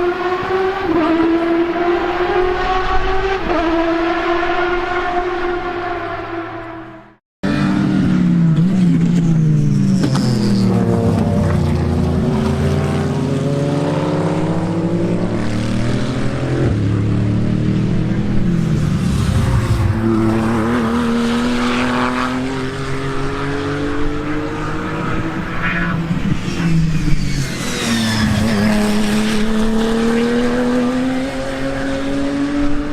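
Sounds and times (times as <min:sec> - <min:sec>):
racing car engine at high revs: 0:00.0 - 0:32.9.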